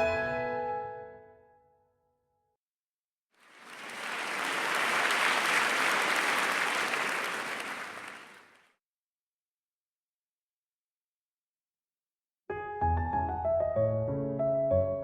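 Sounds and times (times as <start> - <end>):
audience applauding: 3.4 - 8.7.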